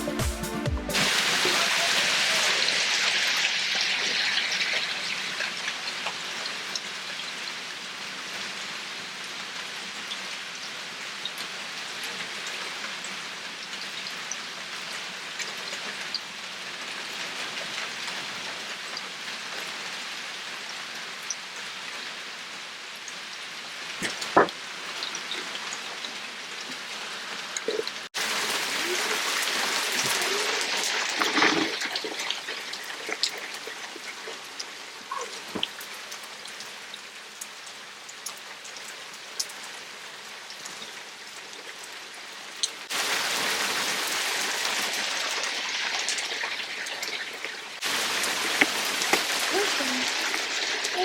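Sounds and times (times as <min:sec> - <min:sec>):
rain drops ticking on surfaces: 0:01.0 - 0:51.0.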